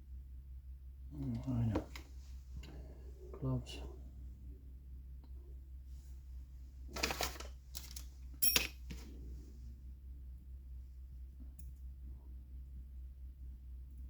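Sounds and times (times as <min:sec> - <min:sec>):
small parts rustling and clattering: 0:06.8 - 0:09.2
metallic clink: 0:08.4 - 0:08.9.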